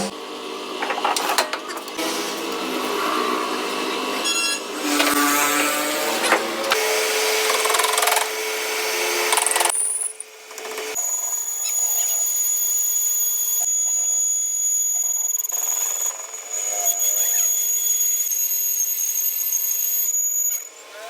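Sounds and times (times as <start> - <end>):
power tool running: 0.0 - 21.0
thin high whine: 11.0 - 20.9.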